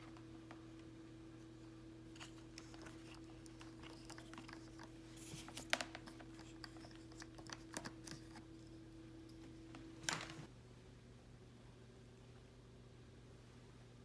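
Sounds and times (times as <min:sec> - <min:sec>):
objects being handled: 0:00.0 - 0:10.5
low electrical hum: 0:00.0 - 0:14.0.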